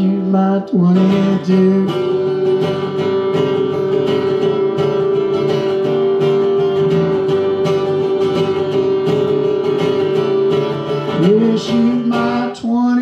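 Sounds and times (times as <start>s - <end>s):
acoustic guitar strumming: 0.0s - 13.0s
country song: 0.0s - 13.0s.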